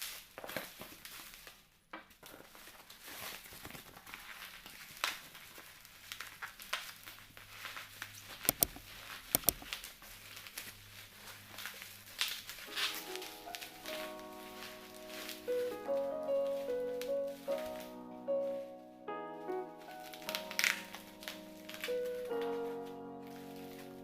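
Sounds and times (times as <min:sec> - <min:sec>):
plastic packaging crinkling: 0:00.0 - 0:18.7, 0:19.6 - 0:24.0
sharp clicks: 0:08.4 - 0:09.8.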